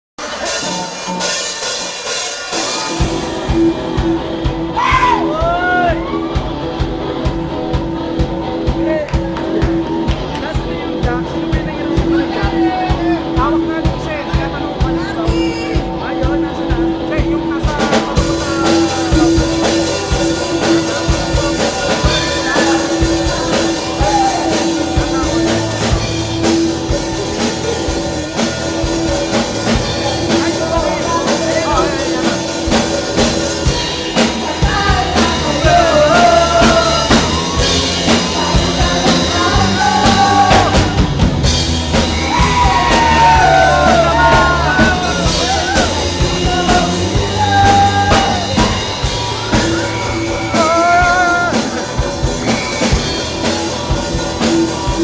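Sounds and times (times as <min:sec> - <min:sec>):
rock band playing live: 0:00.2 - 0:55.0
person singing lead: 0:34.4 - 0:41.1, 0:42.3 - 0:48.7.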